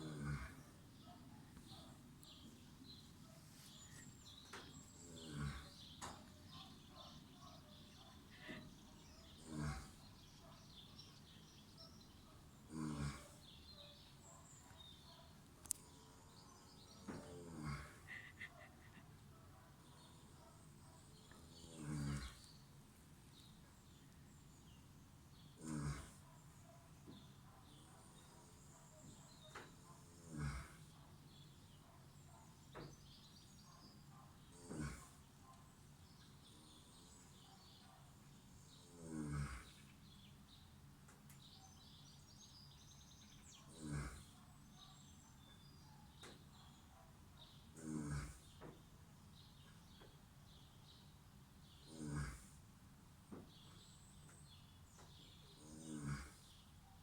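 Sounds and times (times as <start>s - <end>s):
pet snoring: 0.0s - 0.8s, 5.0s - 5.8s, 9.4s - 10.0s, 12.7s - 13.4s, 15.8s - 19.0s, 20.0s - 22.5s, 25.6s - 26.4s, 29.8s - 31.0s, 34.5s - 35.2s, 38.7s - 39.8s, 43.7s - 44.4s, 47.8s - 48.6s, 51.9s - 52.6s, 55.5s - 56.6s.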